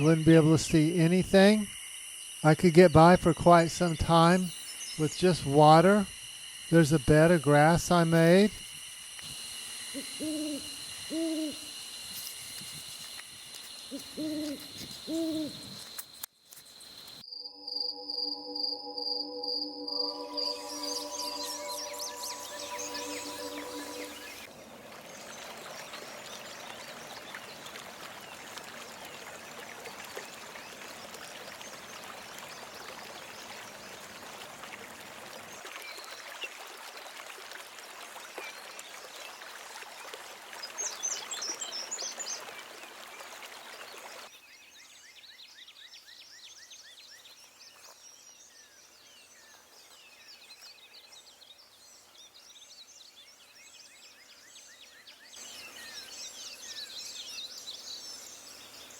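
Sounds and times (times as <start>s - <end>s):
steady hiss: 0.0s - 17.2s
small animals calling: 9.8s - 12.8s, 13.7s - 15.8s
high chirping calls: 19.8s - 24.5s.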